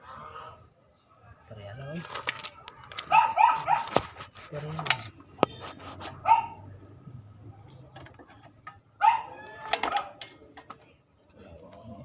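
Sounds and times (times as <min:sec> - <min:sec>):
dog barking: 0:03.1 - 0:04.0, 0:06.2 - 0:06.7, 0:09.0 - 0:09.4.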